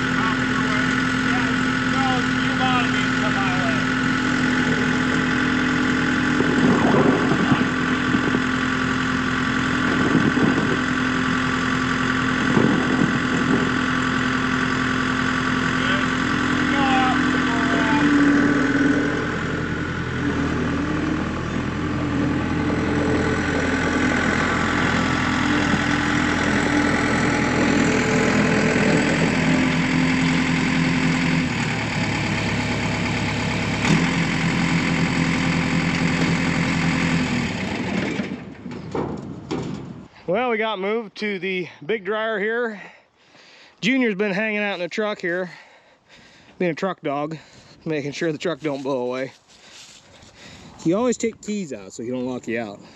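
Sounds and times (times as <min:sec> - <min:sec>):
farm machine engine running: 0:00.0 - 0:40.6.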